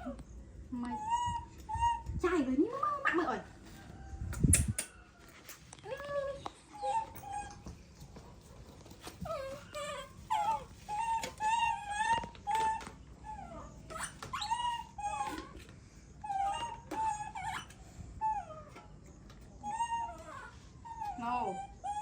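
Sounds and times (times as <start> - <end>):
baby monkey crying: 0.0 - 3.3, 6.8 - 7.6, 9.2 - 15.6, 16.2 - 18.9, 19.6 - 22.0.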